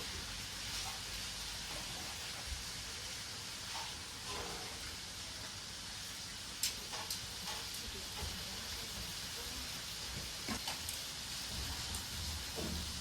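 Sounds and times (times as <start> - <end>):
meat sizzling on a grill: 0.0 - 13.0.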